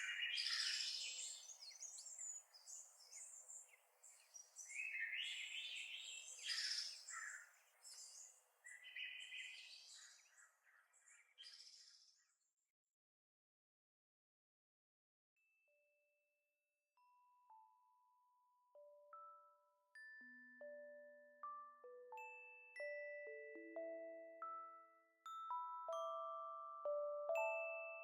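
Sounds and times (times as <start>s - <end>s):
birdsong chirps and warbles: 0.0s - 12.6s.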